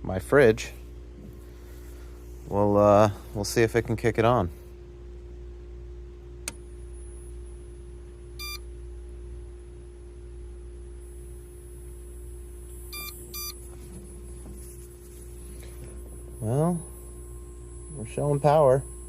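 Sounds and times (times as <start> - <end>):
steady electrical hum: 0.0 - 19.0
inverter short beeps: 8.4 - 8.7, 11.0 - 14.4.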